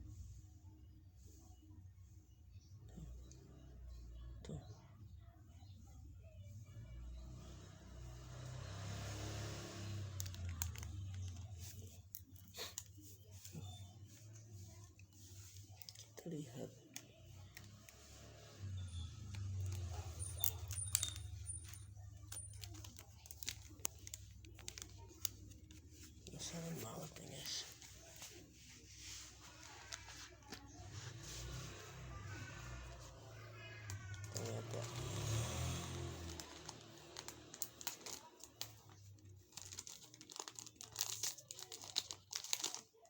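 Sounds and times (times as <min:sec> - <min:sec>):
plastic wrappers crinkling: 0:10.1 - 0:31.5, 0:33.8 - 0:43.0.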